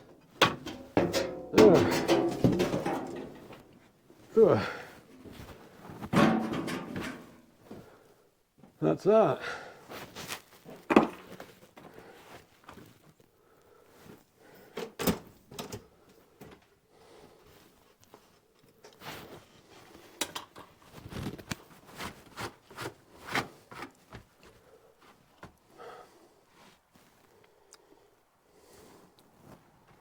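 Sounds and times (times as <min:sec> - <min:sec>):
wooden pieces knocking and rubbing: 0:00.0 - 0:03.8.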